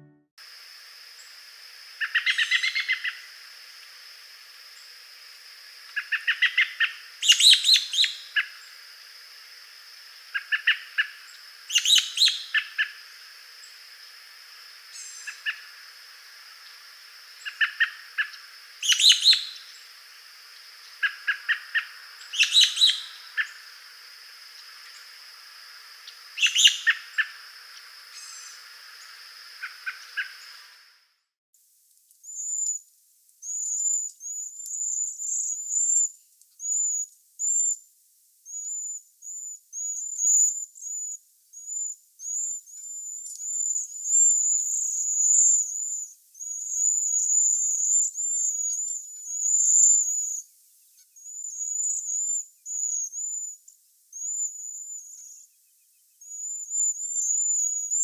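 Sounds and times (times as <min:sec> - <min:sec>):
background hiss: 0:00.0 - 0:38.5
high lisping bird calls: 0:02.0 - 0:03.3, 0:05.9 - 0:08.8, 0:10.2 - 0:13.8, 0:14.9 - 0:15.9, 0:16.6 - 0:25.2, 0:25.8 - 0:30.8
wild birds calling: 0:02.0 - 0:03.4, 0:05.9 - 0:08.8, 0:10.2 - 0:13.9, 0:14.8 - 0:30.8.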